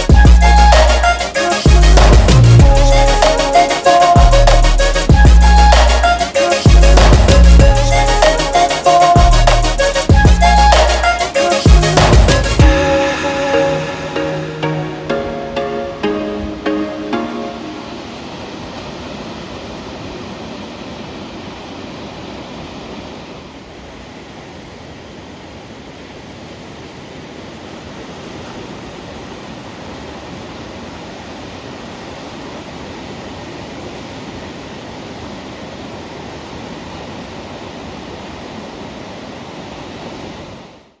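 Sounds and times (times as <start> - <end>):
ocean waves breaking: 0.0 - 24.4.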